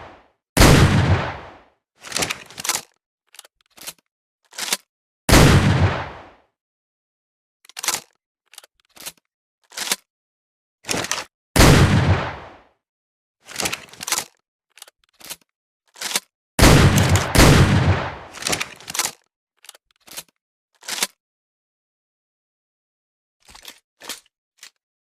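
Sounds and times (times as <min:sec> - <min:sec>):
shotgun blast: 0:00.6 - 0:01.6, 0:05.3 - 0:06.3, 0:11.6 - 0:12.6, 0:16.6 - 0:18.4
clicks of gun action: 0:02.0 - 0:04.9, 0:07.7 - 0:10.1, 0:13.5 - 0:21.2.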